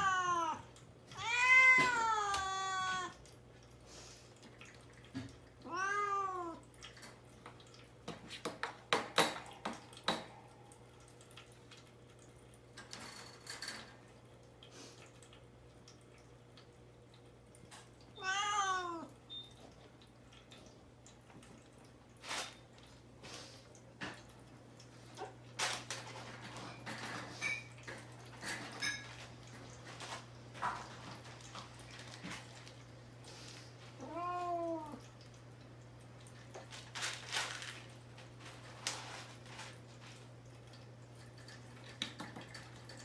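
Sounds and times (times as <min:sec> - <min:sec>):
kitten meowing: 0:00.0 - 0:00.6, 0:01.2 - 0:03.2, 0:05.7 - 0:06.6, 0:18.2 - 0:19.1.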